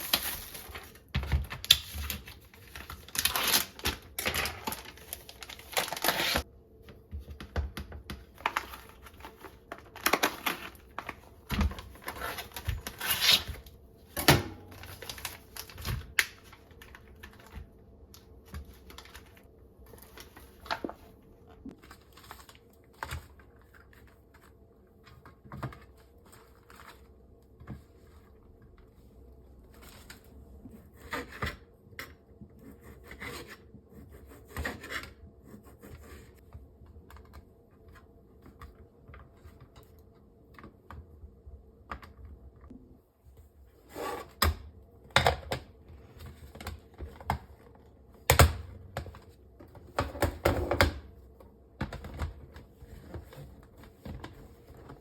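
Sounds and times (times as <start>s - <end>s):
rustling of objects: 0.0s - 31.4s.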